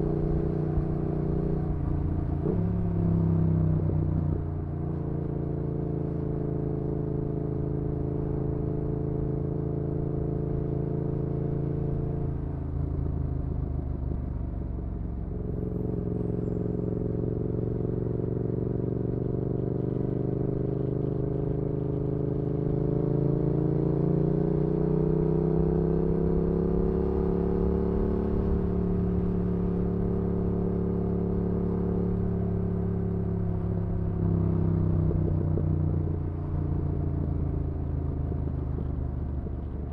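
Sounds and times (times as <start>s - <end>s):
motorcycle engine cruising: 14.2s - 39.9s.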